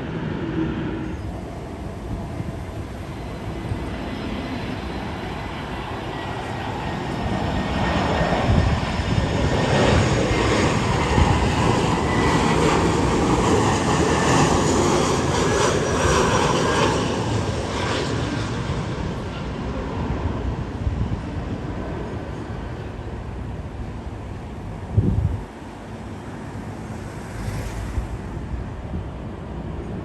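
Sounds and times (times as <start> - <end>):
jet airliner engine noise: 0.0 - 30.0
faint high whine: 23.7 - 30.0.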